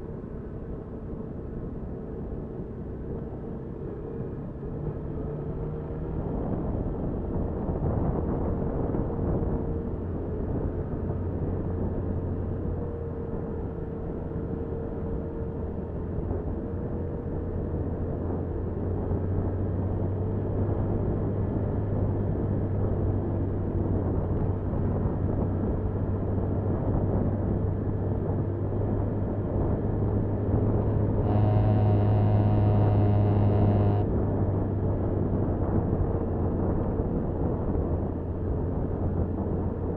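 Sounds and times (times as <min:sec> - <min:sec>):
motorcycle engine hum: 0:27.7 - 0:37.4.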